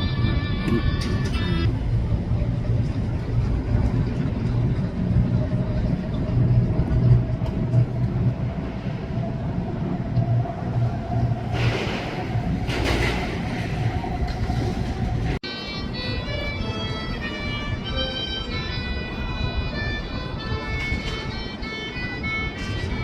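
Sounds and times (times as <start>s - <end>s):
freight train rumbling past: 0.0s - 23.0s
pipe music: 15.4s - 23.0s.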